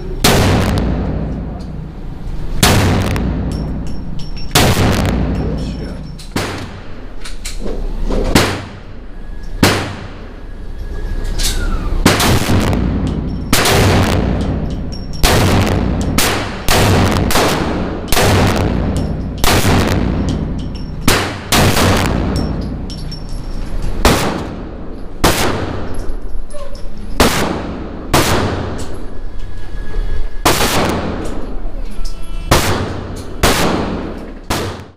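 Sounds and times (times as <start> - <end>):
pistol shots echoing: 4.5 - 5.7, 6.3 - 7.1, 9.6 - 10.3, 12.0 - 22.8, 24.0 - 26.0, 27.2 - 29.0, 32.5 - 34.9.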